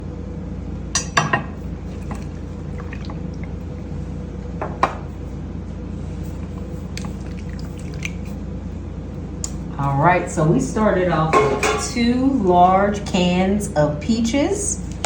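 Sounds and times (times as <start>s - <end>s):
steady low hum: 0.0s - 15.0s
faint wet liquid sounds: 1.6s - 5.3s, 6.0s - 9.7s
kitchenware clinks and knocks: 11.3s - 12.0s.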